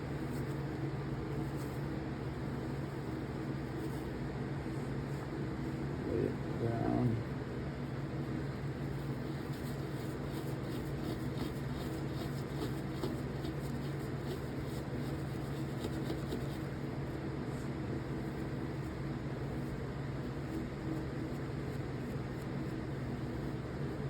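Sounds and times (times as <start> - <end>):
low mechanical hum: 0.0 - 24.0.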